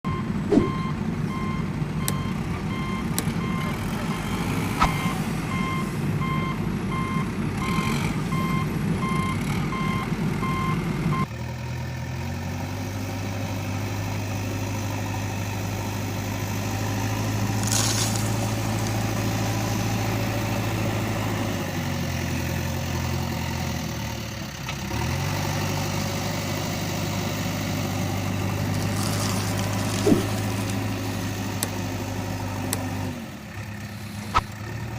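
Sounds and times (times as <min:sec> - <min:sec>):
reversing alarm beeps: 0:00.1 - 0:11.3
low engine hum: 0:00.1 - 0:34.9
rough machine rumble: 0:10.2 - 0:34.9.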